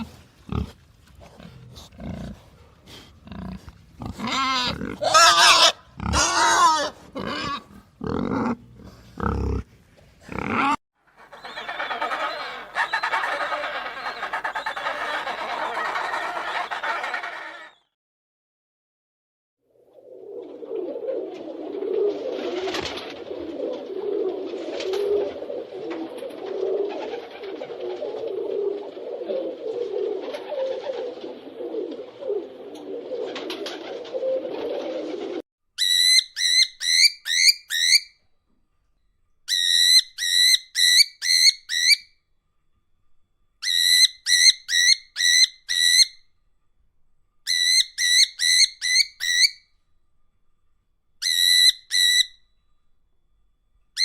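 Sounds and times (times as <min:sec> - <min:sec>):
pigeons cooing: 0:10.3 - 0:17.8, 0:20.0 - 0:35.4.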